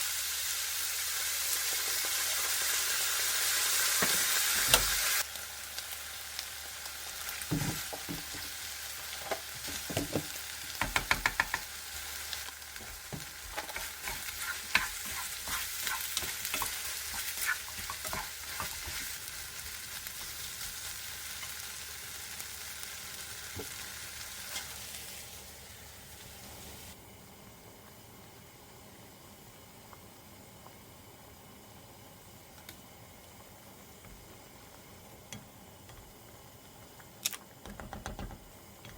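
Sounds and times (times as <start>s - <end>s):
food sizzling in a pan: 0.0s - 36.8s
utensil tapping and scraping pan: 9.3s - 11.7s, 12.8s - 19.2s.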